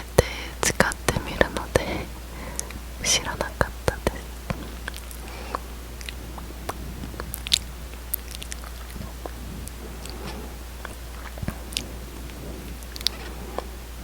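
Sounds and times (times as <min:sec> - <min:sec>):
sticky mouth clicks: 0:02.6 - 0:13.7
wet lip smacks: 0:03.9 - 0:10.2.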